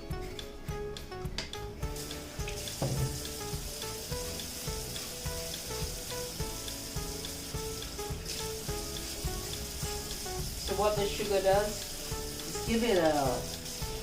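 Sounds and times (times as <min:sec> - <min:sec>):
light background music: 0:00.0 - 0:14.0
chicken sizzling in a pot: 0:01.9 - 0:14.0.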